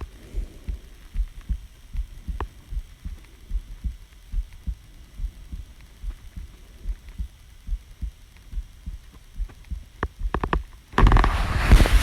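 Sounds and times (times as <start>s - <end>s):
heartbeat thumps: 0.0s - 12.0s
microphone scratchy clicks: 0.0s - 12.0s
microphone handling rustle: 9.2s - 12.0s.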